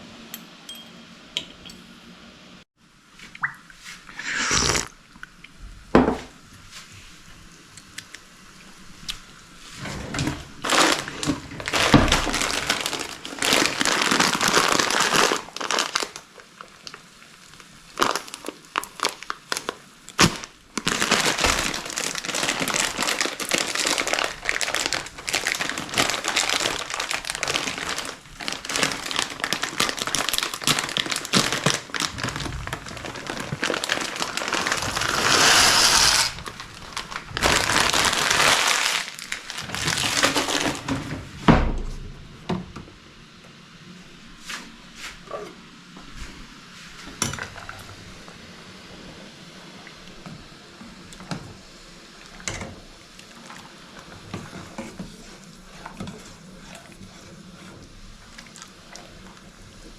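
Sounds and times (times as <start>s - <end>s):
crinkling and crumpling: 9.8s - 41.2s.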